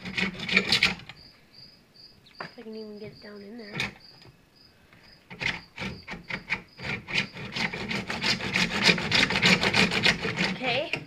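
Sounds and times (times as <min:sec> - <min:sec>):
handsaw cutting plastic pipe: 0:00.0 - 0:01.1, 0:05.3 - 0:11.0.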